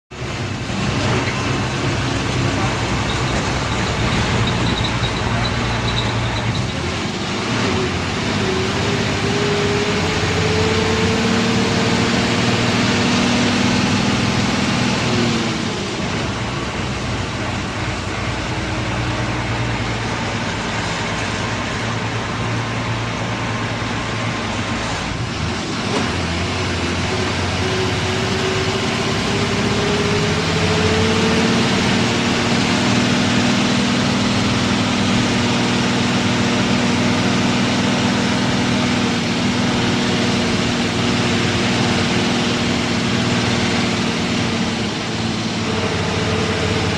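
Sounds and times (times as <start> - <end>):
bus engine: 0.1 - 46.9
road noise: 0.1 - 46.9.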